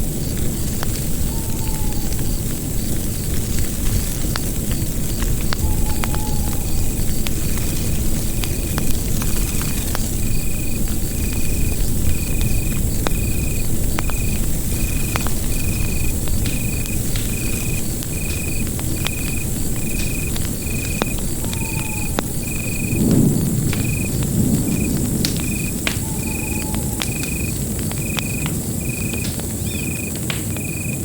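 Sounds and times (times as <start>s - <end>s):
bonfire rumbling and crackling: 0.0s - 31.0s
cricket chirping: 0.0s - 31.0s
flame surge: 6.6s - 28.2s.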